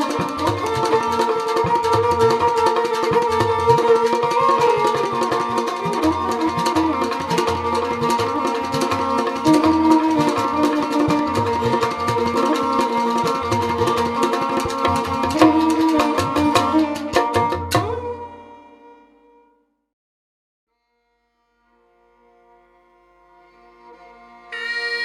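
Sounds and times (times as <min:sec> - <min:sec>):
hand drum beat: 0:00.0 - 0:18.0.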